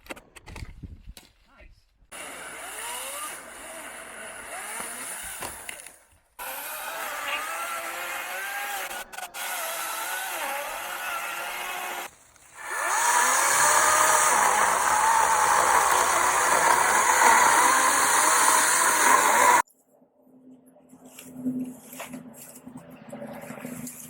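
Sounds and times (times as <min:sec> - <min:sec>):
chainsaw cutting wood: 0:02.1 - 0:19.6.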